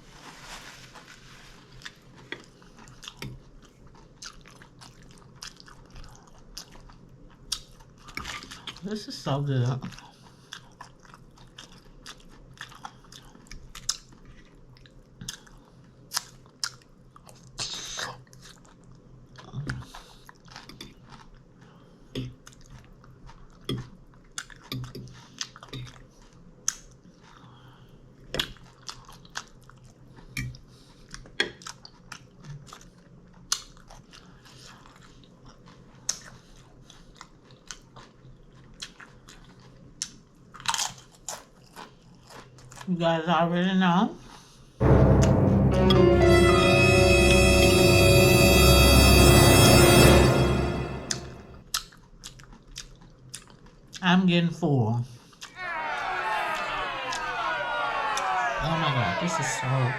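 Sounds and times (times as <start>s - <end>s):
person chewing crunchy food: 9.9s - 14.4s.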